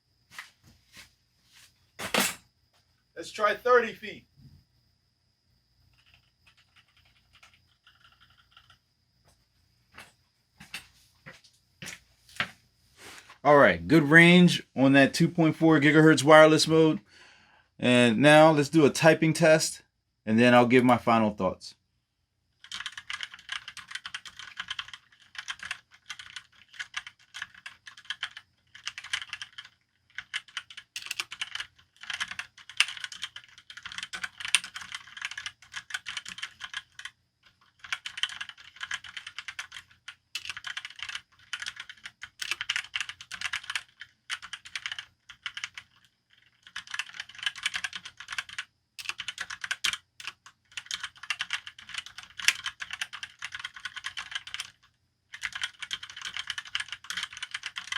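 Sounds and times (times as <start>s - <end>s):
typing on mechanical keyboard: 5.9s - 8.8s, 22.6s - 57.9s.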